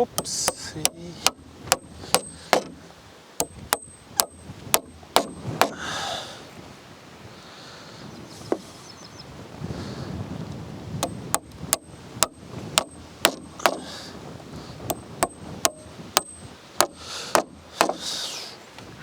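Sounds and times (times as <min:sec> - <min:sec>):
hammering on roof: 0:00.2 - 0:05.9, 0:11.0 - 0:13.9, 0:14.9 - 0:18.1.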